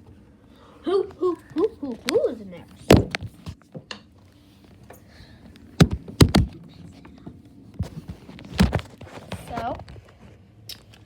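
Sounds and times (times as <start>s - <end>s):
toys knocking and thumping: 2.8s - 4.0s, 5.8s - 6.6s.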